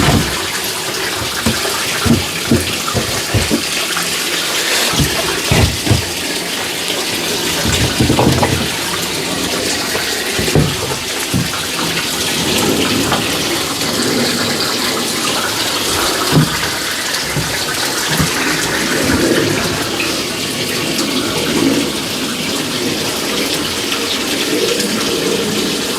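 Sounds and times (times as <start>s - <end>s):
knocks of parts being handled: 0.0s - 13.5s, 15.6s - 19.9s
tap water running: 0.0s - 25.9s.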